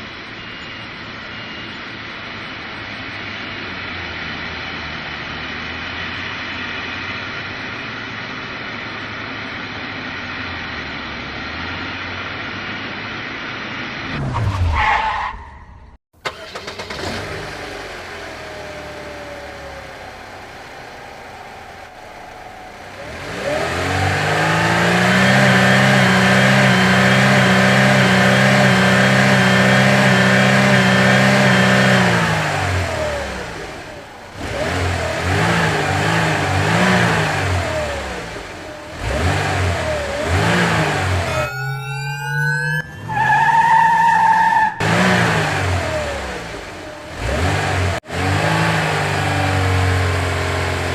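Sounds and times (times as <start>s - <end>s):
vehicle engine revving: 16.3s - 50.9s
rising whine: 18.0s - 47.4s.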